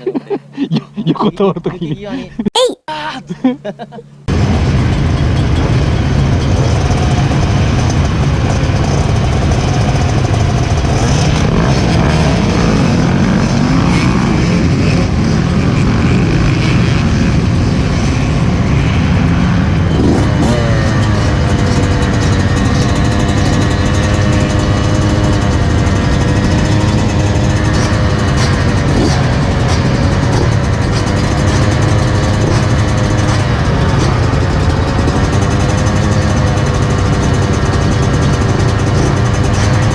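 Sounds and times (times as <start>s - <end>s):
motorcycle engine revving: 27.2s - 39.9s.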